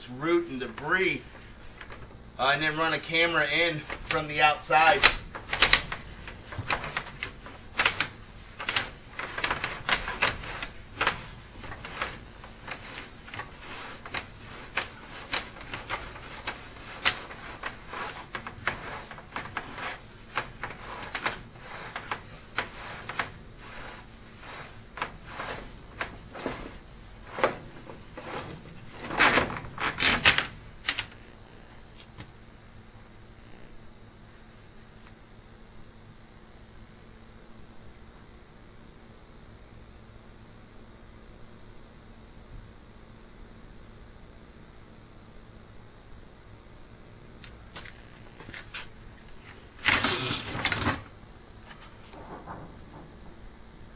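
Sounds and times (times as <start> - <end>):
cable clicks and knocks in pipe: 3.6 - 31.2.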